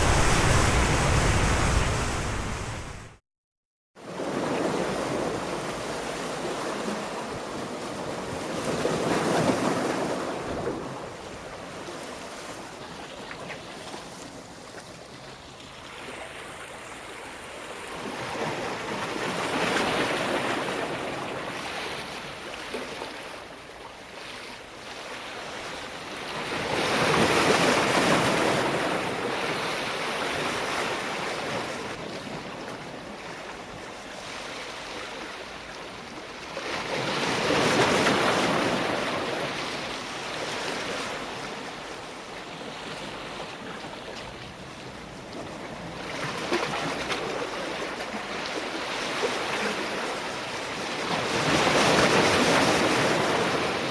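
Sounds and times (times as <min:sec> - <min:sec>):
sea waves breaking: 0:00.0 - 0:03.2.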